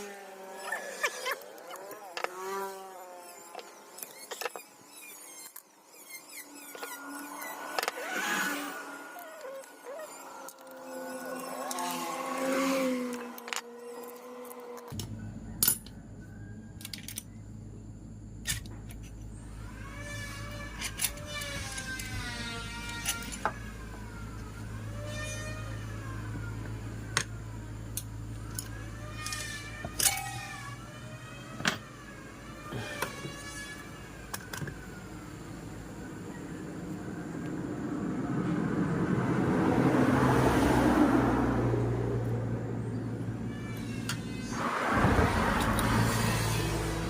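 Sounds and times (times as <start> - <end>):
engine revving: 0.0 - 4.3, 6.4 - 15.2, 19.4 - 47.0
high chirping squeaks: 0.4 - 14.8.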